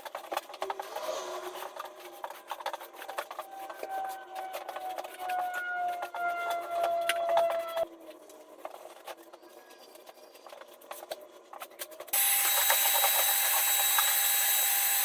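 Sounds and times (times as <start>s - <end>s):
electric sander hissing and whining: 12.2s - 15.0s.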